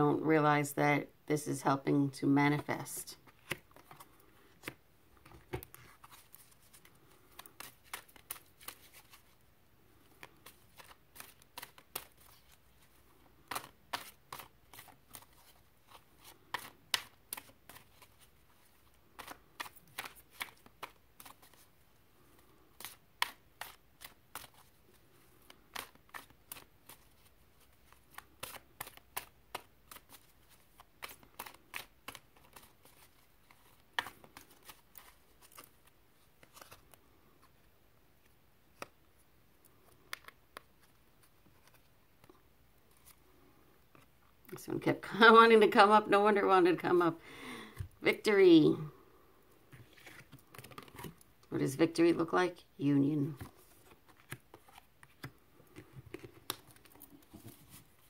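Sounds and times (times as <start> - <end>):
cards being shuffled: 2.6 - 37.6, 39.7 - 44.2, 49.7 - 51.3, 53.3 - 58.0.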